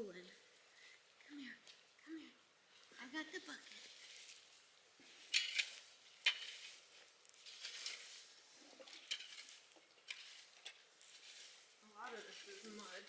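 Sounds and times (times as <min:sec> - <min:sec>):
feed rustling and scraping: 0:02.8 - 0:13.0.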